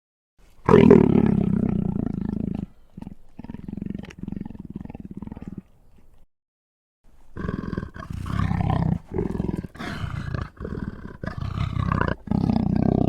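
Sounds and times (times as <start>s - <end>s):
monster roar: 7.4s - 13.0s
rattling growl: 7.4s - 13.0s.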